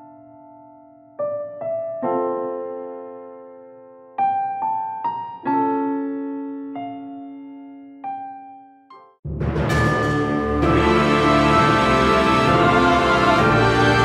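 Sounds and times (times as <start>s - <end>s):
piano music: 0.0s - 14.0s.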